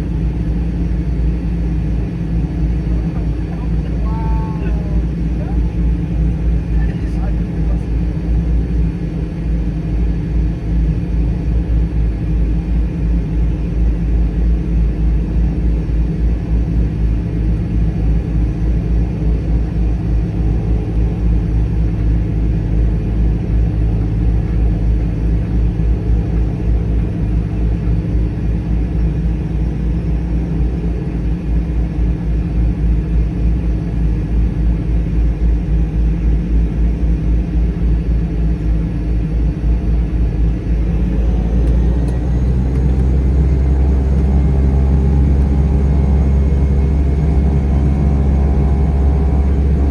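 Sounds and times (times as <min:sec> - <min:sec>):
turboprop engine running: 0:00.0 - 0:49.9.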